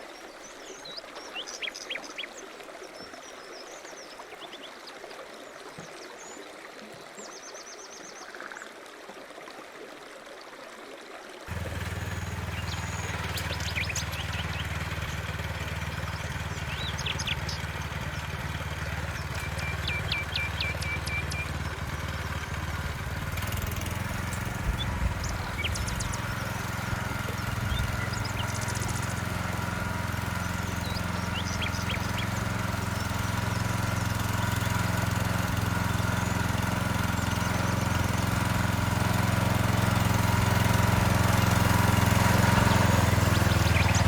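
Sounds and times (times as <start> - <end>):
small petrol engine running: 11.5 - 44.0.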